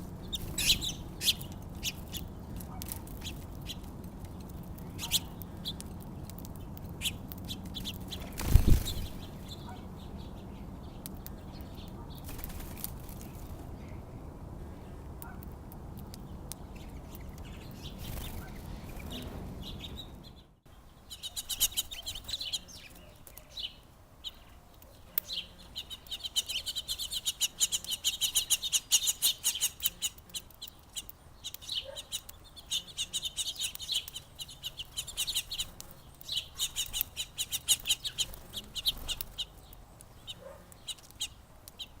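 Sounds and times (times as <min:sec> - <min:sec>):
low background rumble: 0:00.0 - 0:20.7
small songbirds chirping: 0:00.0 - 0:42.0.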